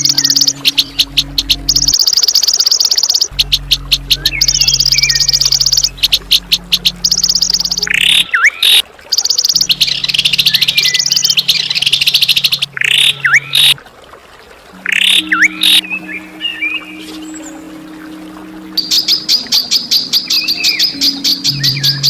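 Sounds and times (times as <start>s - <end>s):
bird rasping calls: 0.0s - 13.8s, 14.8s - 17.5s
low steady hum: 0.0s - 22.0s.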